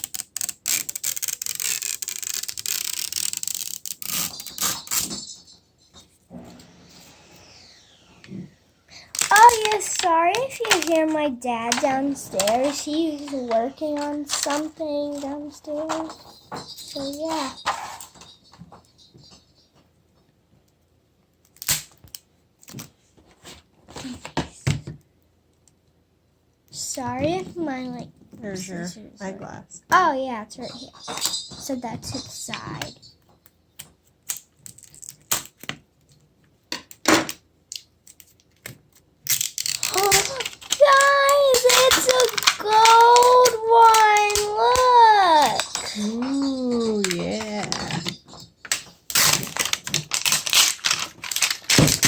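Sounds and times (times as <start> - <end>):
plastic packaging clicks and crackles: 9.2 - 15.2, 37.7 - 45.8, 48.1 - 52.0
plastic packaging crackling: 39.3 - 47.3, 49.1 - 52.0.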